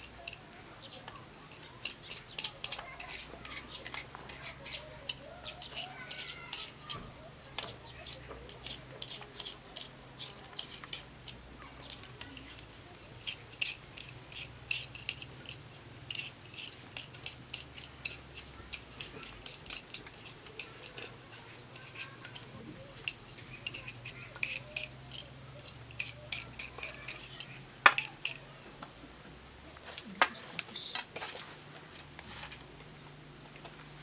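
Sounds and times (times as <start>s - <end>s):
knife cutting potatoes: 1.4s - 28.4s.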